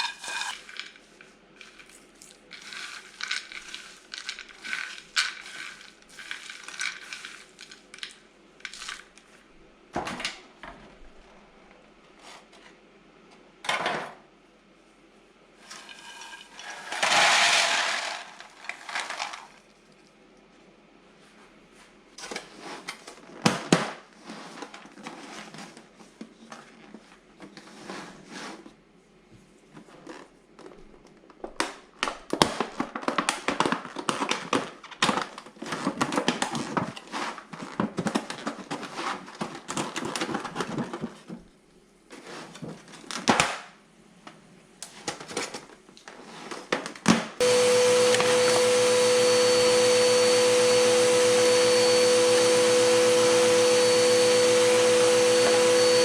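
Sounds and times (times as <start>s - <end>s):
vacuum cleaner whining: 47.4s - 56.0s.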